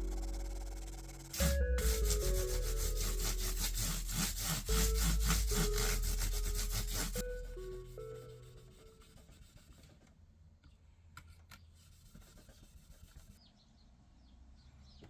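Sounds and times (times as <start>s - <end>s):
background music: 0.0s - 9.1s
hand sanding strokes: 0.0s - 9.7s.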